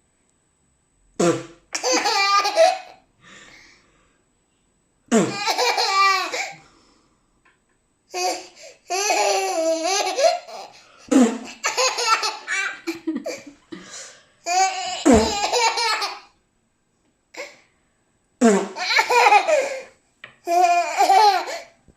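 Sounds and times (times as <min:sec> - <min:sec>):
baby laughing: 0:01.8 - 0:03.0, 0:05.2 - 0:06.5, 0:08.1 - 0:10.8, 0:11.4 - 0:13.5, 0:14.5 - 0:16.3, 0:18.8 - 0:19.8, 0:20.4 - 0:21.7.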